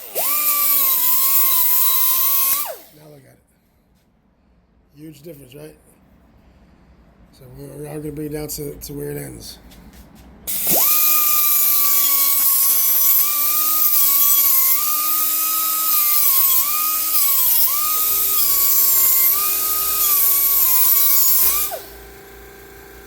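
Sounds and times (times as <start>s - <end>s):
power grinder grinding metal: 0.0s - 3.0s, 10.5s - 23.0s.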